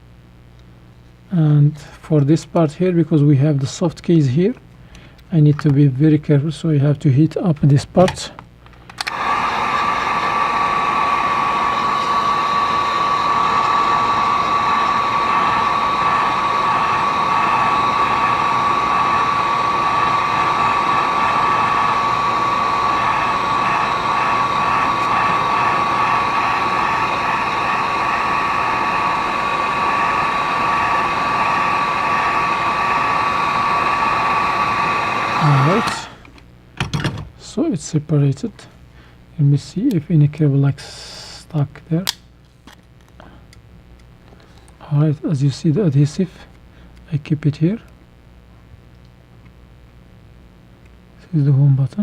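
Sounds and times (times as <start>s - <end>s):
heat gun whining: 8.8s - 36.3s.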